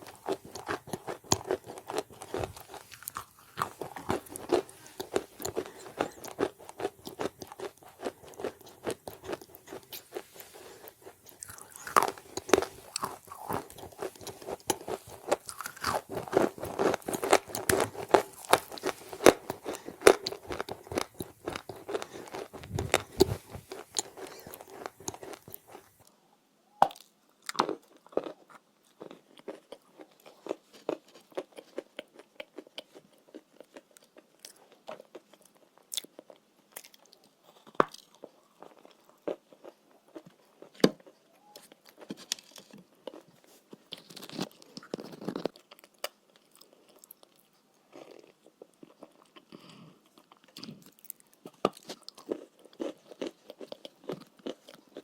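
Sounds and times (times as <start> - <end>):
person chewing chalk crunching: 0.0 - 26.1.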